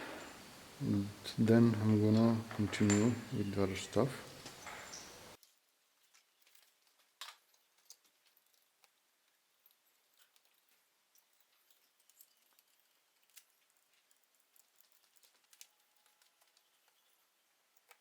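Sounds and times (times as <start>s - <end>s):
faint clicks and taps of tools: 4.2s - 18.0s.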